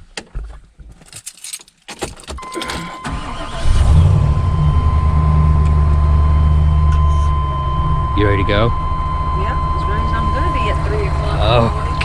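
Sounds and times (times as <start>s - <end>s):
truck engine starting and idling: 2.2s - 12.0s
high-pitched electronic tone: 2.4s - 12.0s.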